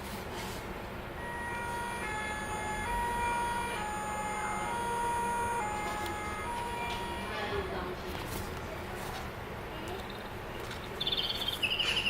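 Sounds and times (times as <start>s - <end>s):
electronic two-tone siren: 1.2s - 7.4s.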